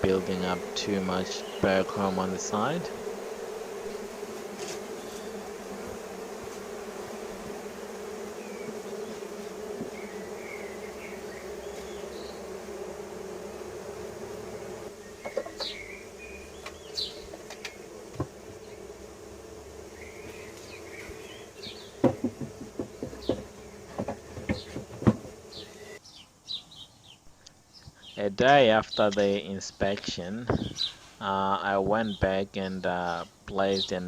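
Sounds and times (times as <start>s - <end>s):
honeybees buzzing: 0.0s - 34.0s
hive frames knocking and clicking: 9.2s - 11.1s, 15.2s - 18.6s, 20.2s - 25.6s, 30.0s - 30.9s.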